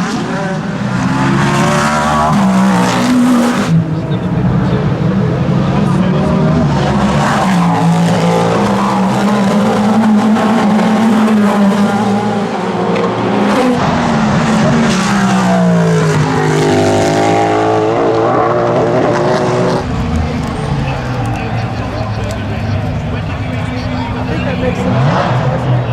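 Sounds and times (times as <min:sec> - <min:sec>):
race car engine revving hard: 0:00.0 - 0:25.9.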